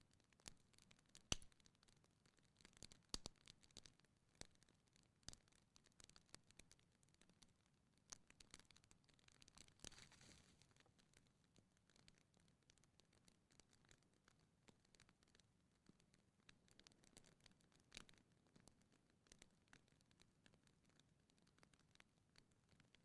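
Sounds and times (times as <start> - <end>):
wood fire crackling: 9.7 - 10.8.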